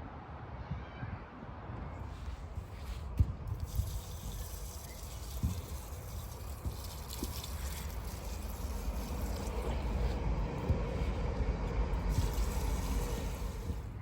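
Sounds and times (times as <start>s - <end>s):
water pouring and trickling: 3.5s - 14.0s.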